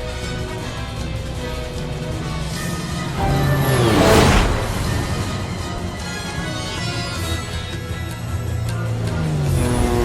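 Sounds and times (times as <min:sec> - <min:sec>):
film score music: 0:03.0 - 0:08.0.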